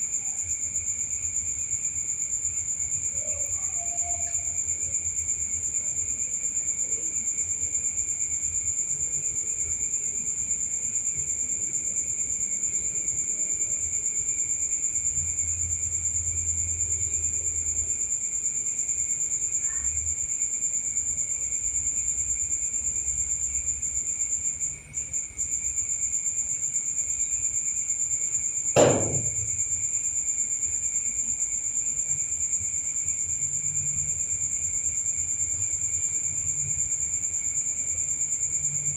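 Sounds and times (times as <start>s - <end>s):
crickets chirping: 0.0s - 38.9s
low insect drone: 0.0s - 38.9s
sharp knock: 28.8s - 29.6s.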